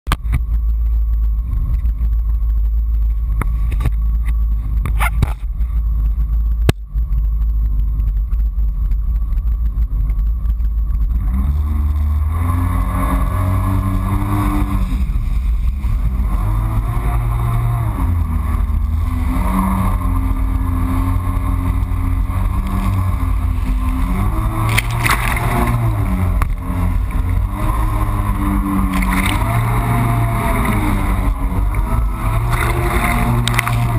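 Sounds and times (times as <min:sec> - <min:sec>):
jet ski engine revving: 0:09.1 - 0:33.9
engine knocks: 0:17.6 - 0:33.9.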